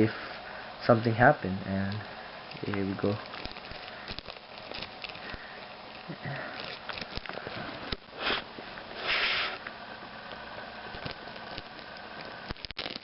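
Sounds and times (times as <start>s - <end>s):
dry rice rustling and clicking: 1.8s - 8.0s, 10.3s - 13.0s
short hissing bursts: 8.1s - 9.6s.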